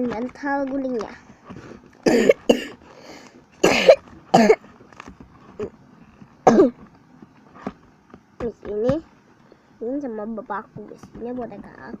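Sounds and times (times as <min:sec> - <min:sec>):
girl coughing: 0:02.0 - 0:02.8, 0:03.6 - 0:04.6, 0:06.5 - 0:06.8.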